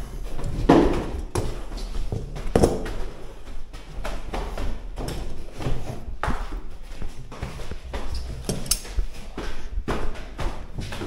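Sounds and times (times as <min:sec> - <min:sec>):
irregular knocks and thuds: 0:00.2 - 0:11.0.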